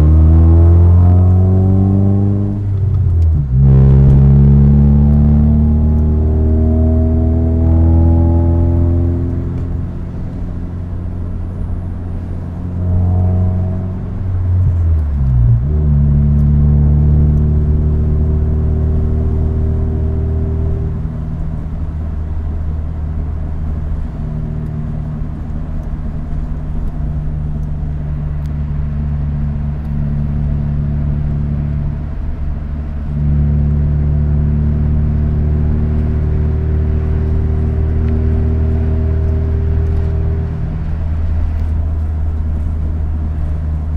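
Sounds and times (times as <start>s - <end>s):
car engine idling: 20.6s - 43.9s.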